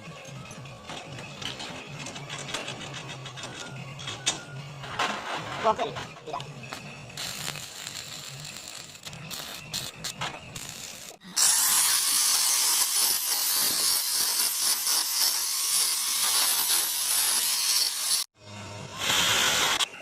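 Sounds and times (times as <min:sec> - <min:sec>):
power tool working steel: 0:07.2 - 0:20.0.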